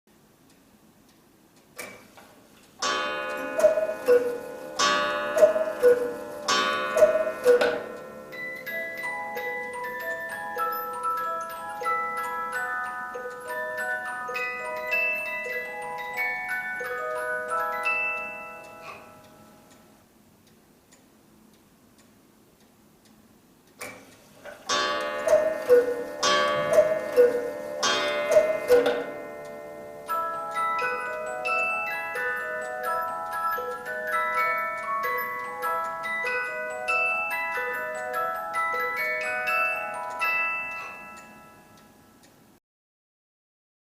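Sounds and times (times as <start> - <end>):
clock mechanism click: 0.5 - 10.2, 20.4 - 36.7
ringing clock strike: 2.8 - 19.8, 24.7 - 42.2
cuckoo clock calls: 2.8 - 19.9, 24.6 - 42.2
music box tune: 2.8 - 20.0, 24.7 - 42.4
cuckoo call: 3.4 - 4.5, 5.4 - 6.2, 6.9 - 9.6, 25.2 - 29.1.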